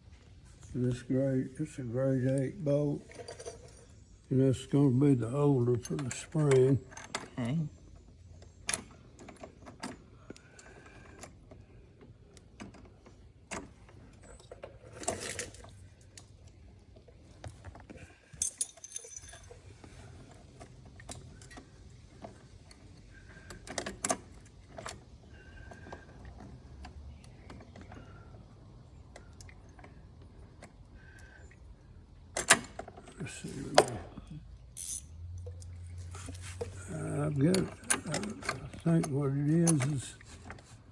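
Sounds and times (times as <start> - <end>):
metal tools clinking: 2.2 - 4.0, 14.3 - 15.7, 18.3 - 19.8, 34.8 - 40.1.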